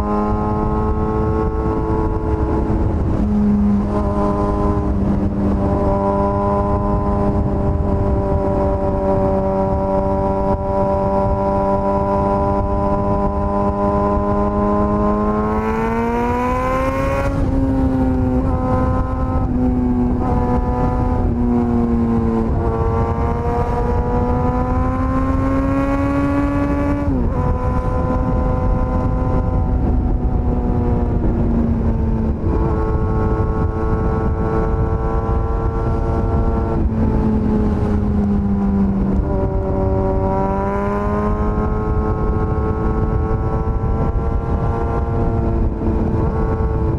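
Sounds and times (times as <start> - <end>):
motorcycle engine revving: 0.0 - 46.9.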